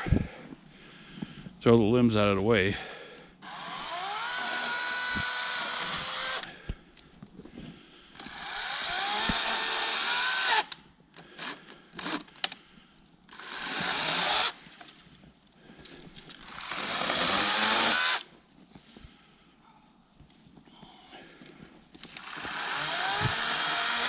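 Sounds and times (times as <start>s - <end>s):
electric chainsaw motor whining: 3.4s - 6.5s, 8.2s - 10.8s, 13.3s - 14.6s, 16.3s - 18.3s, 22.1s - 24.0s.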